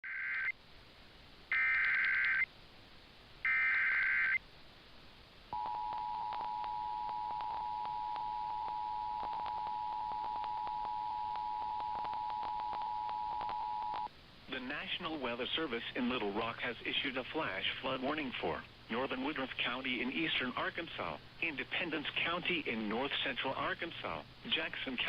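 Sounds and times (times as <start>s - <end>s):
radio static clicks: 5.6s - 14.1s.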